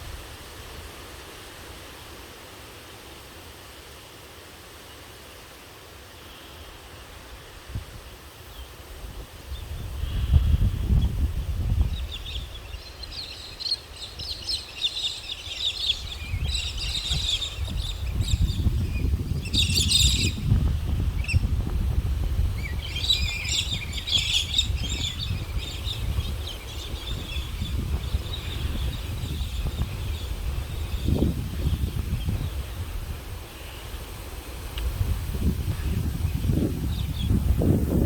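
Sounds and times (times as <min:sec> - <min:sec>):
wind buffeting microphone: 0:08.8 - 0:38.0
small birds chirping: 0:09.5 - 0:33.0.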